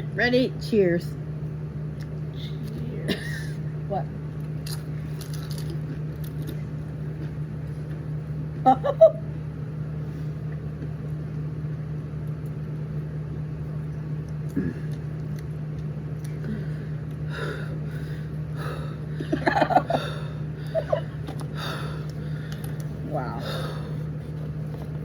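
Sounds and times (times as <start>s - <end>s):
steady low hum: 0.0s - 25.0s
person gasping: 23.2s - 24.0s.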